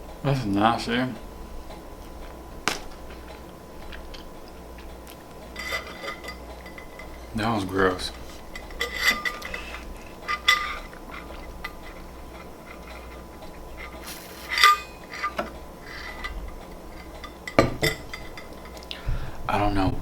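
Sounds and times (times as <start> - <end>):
tableware clinking: 5.6 - 7.2, 14.0 - 15.5, 17.0 - 18.6.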